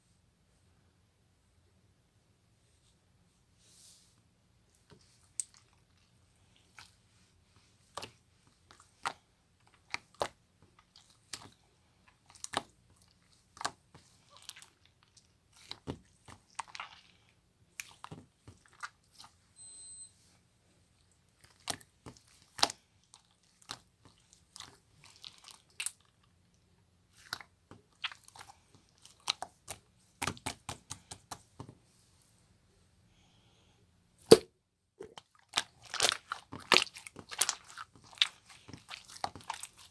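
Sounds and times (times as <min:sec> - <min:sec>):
slime squished by hand: 0:27.1 - 0:31.6, 0:34.2 - 0:39.9.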